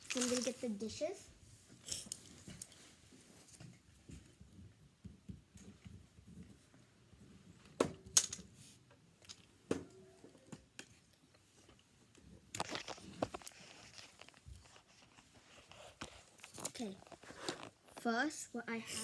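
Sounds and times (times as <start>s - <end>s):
rustling and rattling: 0.0s - 0.8s, 12.5s - 18.2s.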